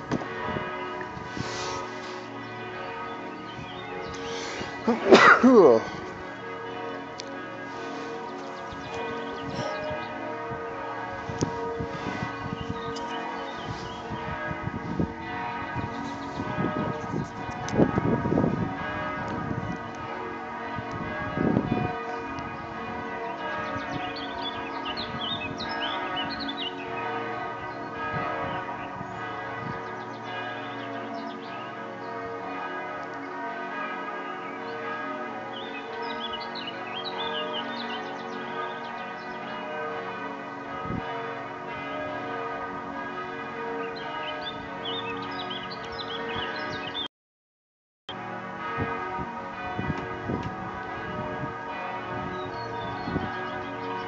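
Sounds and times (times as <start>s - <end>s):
church bells ringing: 0.0s - 47.1s, 48.1s - 54.0s
birds chirping: 1.4s - 10.4s, 11.6s - 14.4s, 23.2s - 32.2s, 35.5s - 39.7s, 43.8s - 47.1s.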